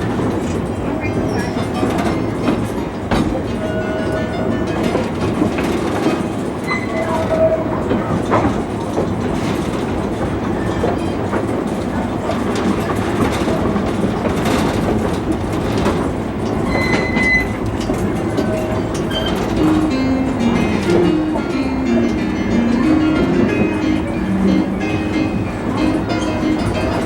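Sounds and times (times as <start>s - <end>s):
clickety-clack over rail joints: 0.0s - 27.0s
train wheels rumbling: 0.0s - 27.0s
high wheel squeals: 6.6s - 8.2s, 16.4s - 21.0s.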